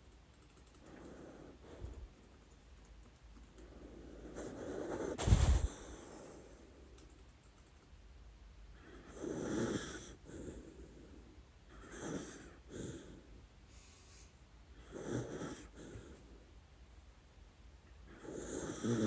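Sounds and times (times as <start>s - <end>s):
dog snoring: 8.8s - 13.3s, 14.1s - 16.3s, 18.1s - 19.0s.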